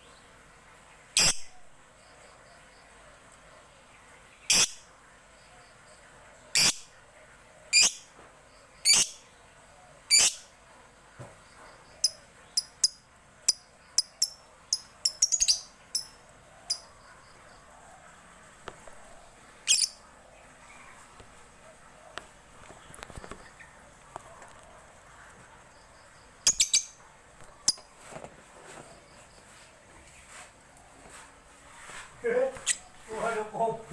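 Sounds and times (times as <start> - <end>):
lovebird shrill calls: 1.2 - 1.5, 4.5 - 4.8, 6.6 - 6.8, 7.7 - 8.0, 8.8 - 9.2, 10.1 - 10.5, 12.0 - 16.8, 19.6 - 20.0, 26.4 - 27.0
lovebird sharp chirps: 1.2 - 1.6, 4.5 - 4.8, 6.6 - 6.9, 7.8 - 8.1, 8.8 - 9.2, 10.1 - 10.5, 12.0 - 16.9, 19.6 - 20.0, 26.4 - 27.0.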